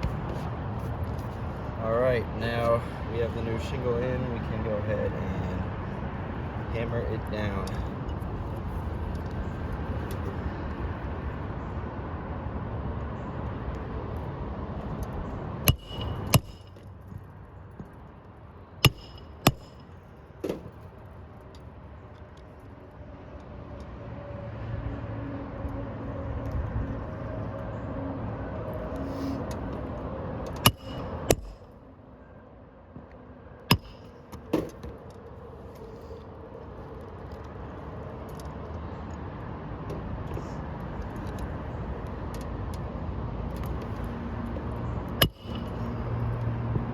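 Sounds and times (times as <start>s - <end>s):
hammer nailing shingle: 15.7s - 16.8s, 18.8s - 20.8s, 30.5s - 31.6s, 33.7s - 34.8s, 45.2s - 45.9s
low background rumble: 29.6s - 38.3s.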